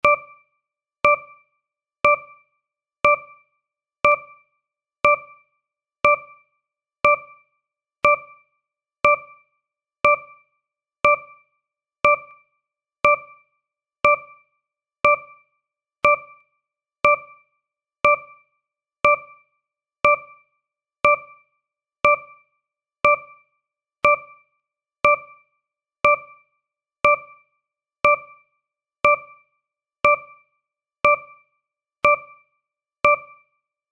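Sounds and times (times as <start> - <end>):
electronic timer tick tone: 0.0 - 0.4, 1.0 - 1.4, 2.0 - 2.4, 3.0 - 3.4, 4.0 - 4.4, 5.0 - 5.4, 6.0 - 6.4, 7.0 - 7.4, 8.0 - 8.4, 9.0 - 9.4, 10.0 - 10.4, 11.0 - 11.4, 12.0 - 12.4, 13.0 - 13.4, 14.0 - 14.4, 15.0 - 15.4, 16.0 - 16.4, 17.0 - 17.4, 18.0 - 18.4, 19.0 - 19.4, 20.0 - 20.4, 21.0 - 21.4, 22.0 - 22.4, 23.0 - 23.4, 24.0 - 24.4, 25.0 - 25.4, 26.0 - 26.4, 27.0 - 27.4, 28.0 - 28.4, 29.0 - 29.4, 30.0 - 30.4, 31.0 - 31.4, 32.0 - 32.4, 33.0 - 33.5.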